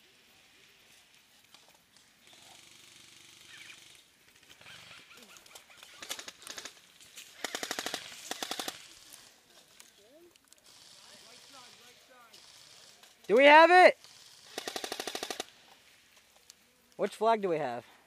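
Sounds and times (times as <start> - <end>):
airsoft rifle automatic fire: 5.8 - 9.2, 10.6 - 15.6.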